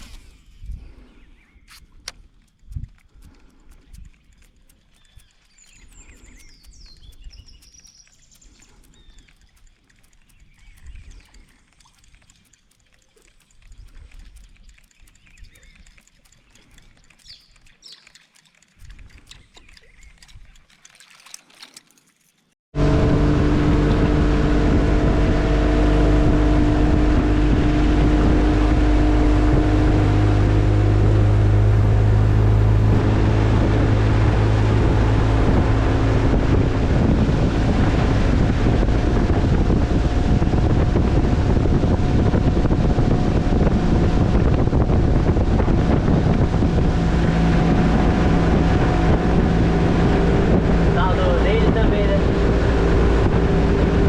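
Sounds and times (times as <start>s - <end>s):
soft clicks and calls: 0.0s - 22.6s
boat motor running: 2.5s - 20.6s, 22.8s - 54.0s
forest and river ambience: 19.4s - 36.6s, 46.7s - 54.0s.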